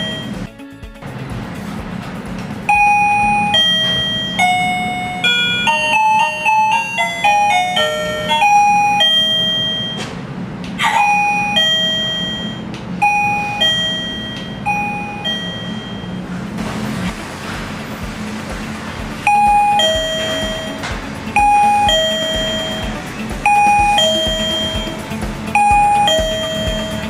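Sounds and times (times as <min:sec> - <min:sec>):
electronic doorbell chime melody: 0:00.0 - 0:00.5, 0:02.7 - 0:10.0, 0:11.0 - 0:16.3, 0:19.3 - 0:27.0
two-note ding-dong chime: 0:02.7 - 0:10.1, 0:11.1 - 0:16.2, 0:19.3 - 0:25.0, 0:25.6 - 0:27.0.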